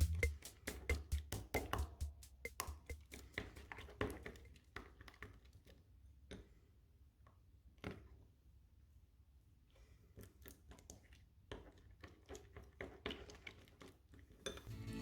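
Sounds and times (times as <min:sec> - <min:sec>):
background music: 0:14.7 - 0:15.0.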